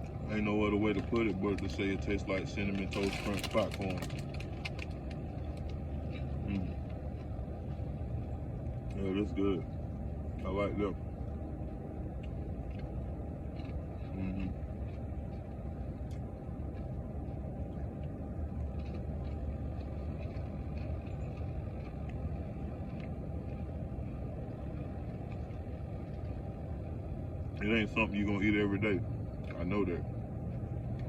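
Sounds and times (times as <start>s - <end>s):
popcorn chewing clicks: 0.0s - 9.1s, 11.6s - 26.5s
car cabin engine rumble: 0.0s - 31.0s.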